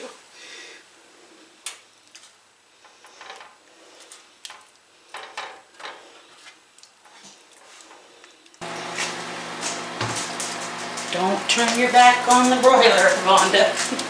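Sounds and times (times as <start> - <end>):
utensils and dishes clicking: 8.6 - 14.0.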